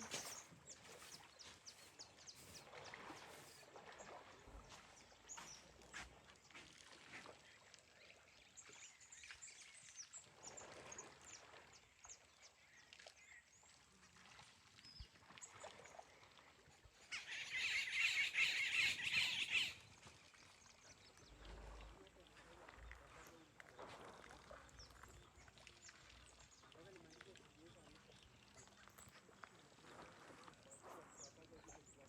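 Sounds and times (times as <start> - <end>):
small birds chirping: 0.0 - 3.7.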